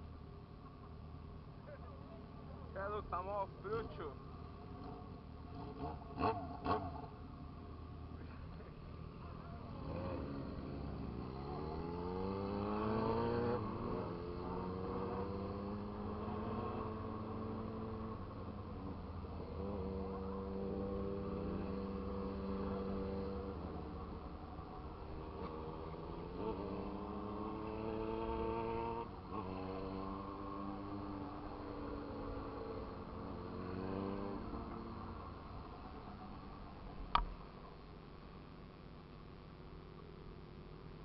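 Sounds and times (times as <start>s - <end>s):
road and wind rumble: 0.0s - 41.0s
motorcycle engine revving: 4.7s - 7.4s, 8.2s - 37.2s.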